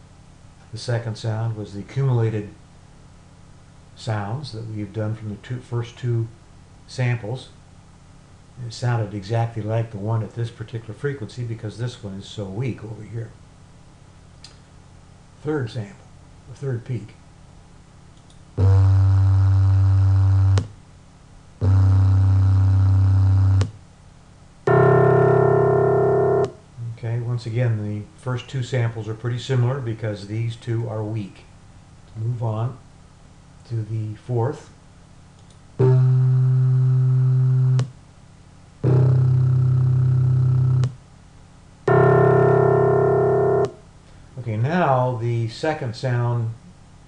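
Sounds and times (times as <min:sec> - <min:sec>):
synthesized pure tone: 0:18.6 - 0:20.6, 0:21.6 - 0:23.7, 0:24.7 - 0:26.6, 0:35.8 - 0:37.8, 0:38.8 - 0:40.9, 0:41.9 - 0:43.9
sum of sampled tones: 0:18.6 - 0:20.7, 0:21.6 - 0:23.7, 0:24.7 - 0:26.6, 0:35.8 - 0:37.9, 0:38.8 - 0:40.9, 0:41.9 - 0:43.8
grand piano note: 0:24.7 - 0:26.6, 0:41.9 - 0:43.8.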